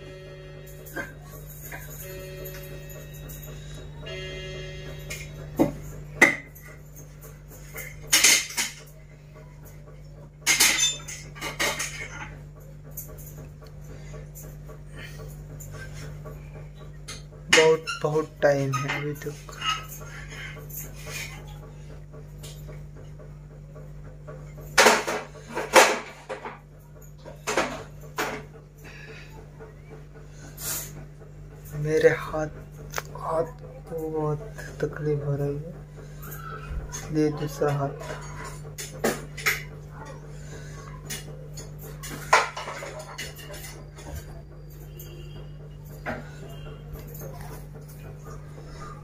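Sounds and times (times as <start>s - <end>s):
steady low hum: 0.0s - 49.0s
objects clinking and clattering: 4.9s - 23.2s, 24.2s - 29.4s, 36.2s - 49.0s.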